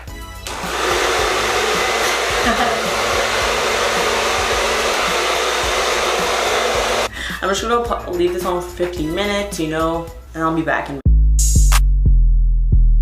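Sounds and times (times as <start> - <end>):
hair dryer whooshing: 0.4 - 7.1.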